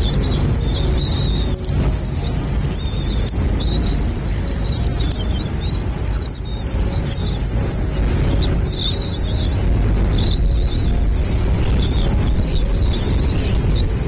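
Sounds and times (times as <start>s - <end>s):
birds chirping and warbling: 0.0s - 14.0s
low rumble: 5.8s - 14.0s.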